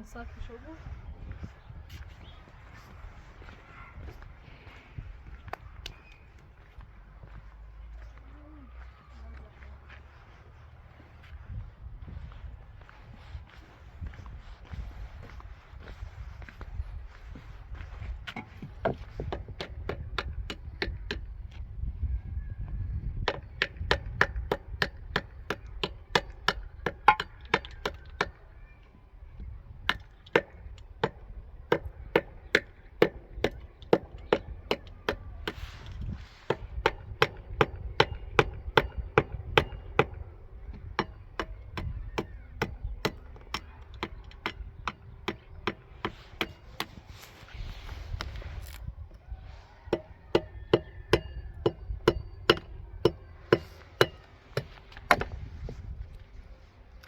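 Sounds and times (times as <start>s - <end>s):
chopping strikes on wood: 23.3s - 28.4s, 49.9s - 55.4s.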